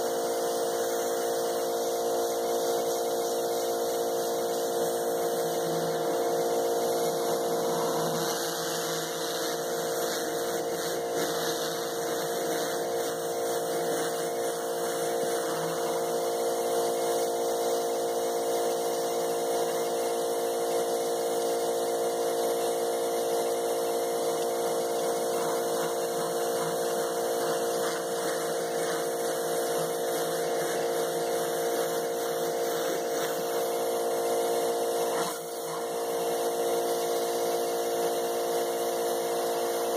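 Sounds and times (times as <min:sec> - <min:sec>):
pressure washer motor humming: 0:00.0 - 0:39.9
water spraying hiss: 0:04.6 - 0:17.3, 0:24.2 - 0:34.2.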